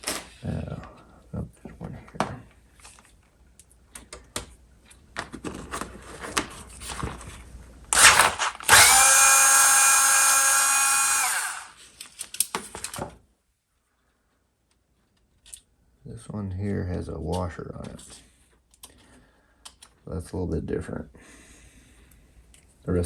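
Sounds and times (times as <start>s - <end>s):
power screwdriver whine: 7.9s - 11.8s.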